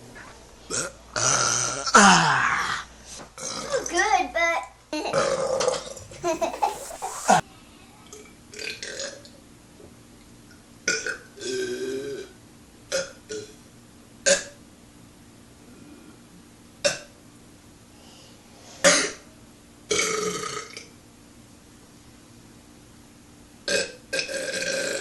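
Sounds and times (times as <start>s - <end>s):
man burping: 0.7s - 2.9s.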